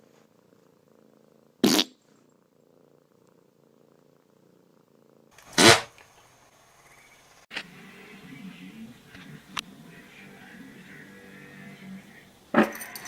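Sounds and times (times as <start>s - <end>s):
cat purring: 0.0s - 5.4s.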